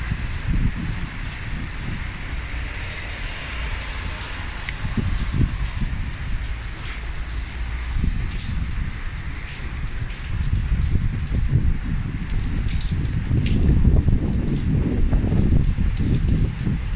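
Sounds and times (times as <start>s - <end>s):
low rumble: 0.0s - 9.0s
rain falling: 0.0s - 16.9s
sharp drip ticks: 0.2s - 16.9s.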